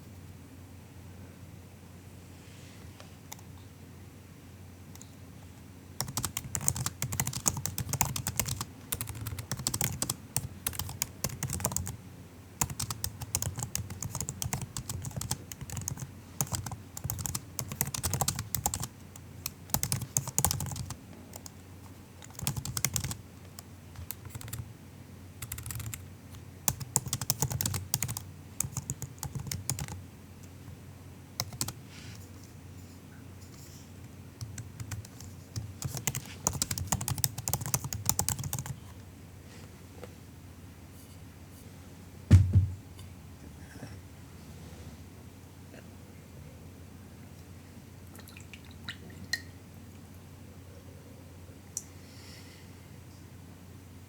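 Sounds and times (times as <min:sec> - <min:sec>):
laptop keyboard typing: 0:06.0 - 0:12.0, 0:12.6 - 0:21.6, 0:22.2 - 0:24.7, 0:25.4 - 0:30.0, 0:31.4 - 0:31.8, 0:34.4 - 0:38.8.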